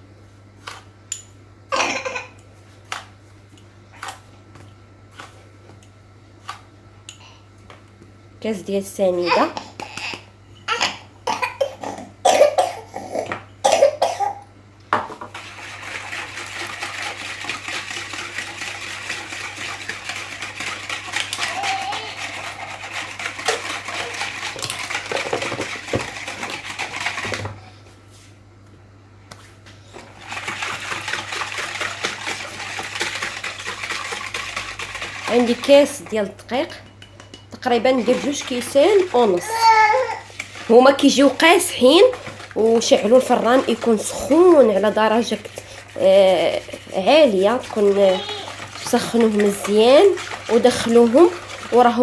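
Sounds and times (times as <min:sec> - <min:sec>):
stirring scraping in a bowl: 0:15.2 - 0:28.3, 0:29.9 - 0:52.0.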